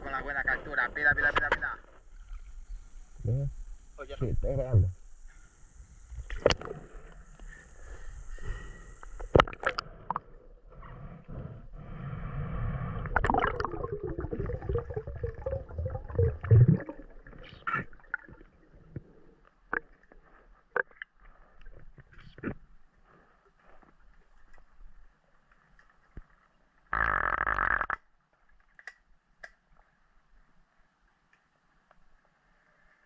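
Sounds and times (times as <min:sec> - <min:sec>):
river water gurgling: 0:13.1 - 0:18.8.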